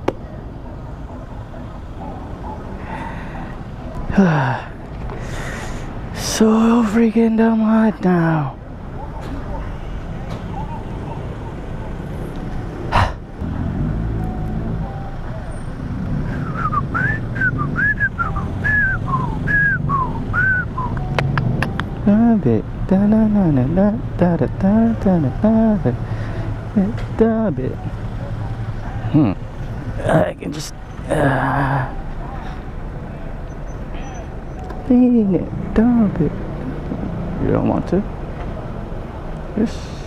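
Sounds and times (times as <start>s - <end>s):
person sighing: 12.9s - 13.2s
person whistling a tune: 16.4s - 21.2s.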